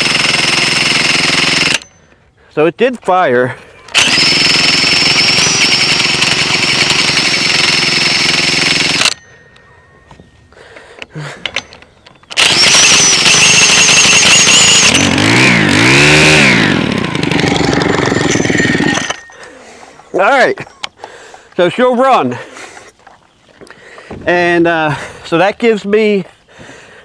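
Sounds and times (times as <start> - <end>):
string trimmer engine running: 0.0 - 2.0, 3.8 - 9.2, 11.1 - 20.0.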